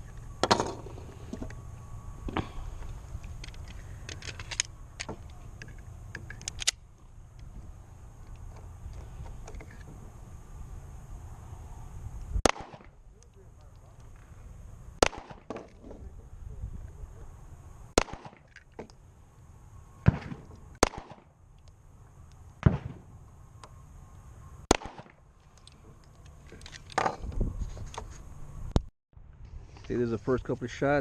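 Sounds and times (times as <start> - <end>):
pistol shots: 12.4 - 13.0, 15.0 - 15.6, 18.0 - 18.5, 20.0 - 21.3, 22.6 - 23.0, 24.7 - 25.2.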